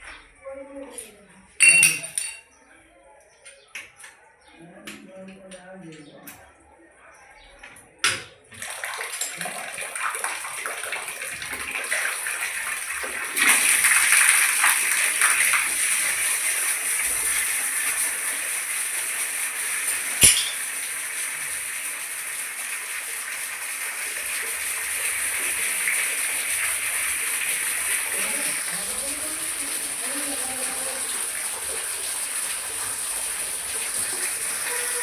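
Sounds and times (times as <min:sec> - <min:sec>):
water running from tap: 0:08.5 - 0:35.0.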